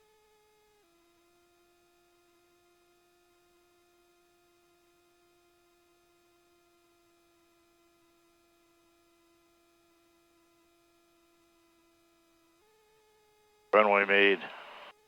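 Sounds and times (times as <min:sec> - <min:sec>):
faint steady hum: 0:13.8 - 0:14.9.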